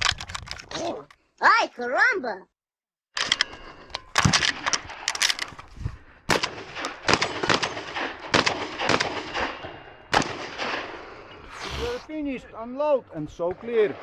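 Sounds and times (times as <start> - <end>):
shotgun shots: 6.3 - 11.0.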